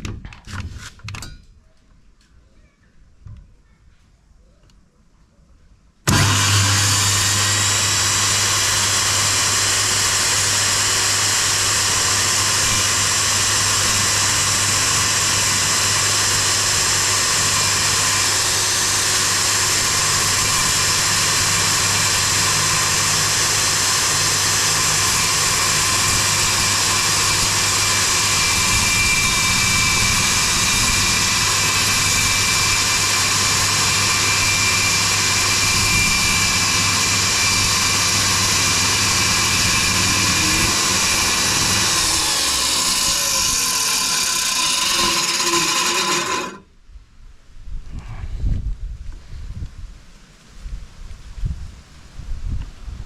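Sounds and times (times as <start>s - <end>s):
electric power saw cutting: 6.1s - 46.7s.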